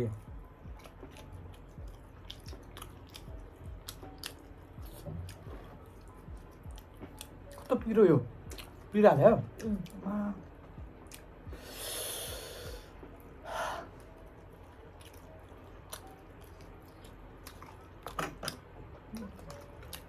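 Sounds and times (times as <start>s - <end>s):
faint chewing: 0.1s - 7.8s, 8.5s - 8.9s, 13.1s - 20.0s.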